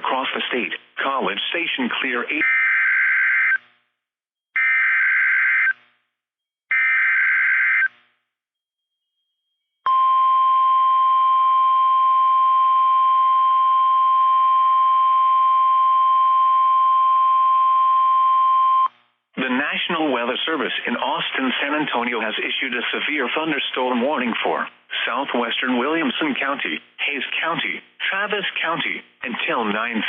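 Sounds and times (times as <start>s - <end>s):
steady single-pitch alarm tone: 6.7s - 7.9s.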